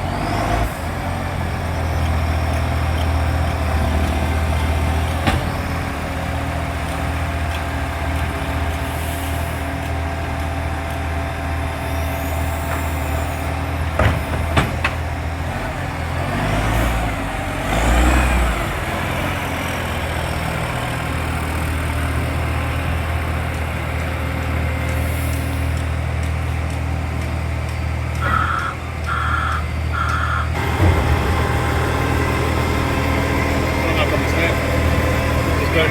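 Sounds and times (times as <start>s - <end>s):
garbage truck diesel engine running: 0.0s - 35.9s.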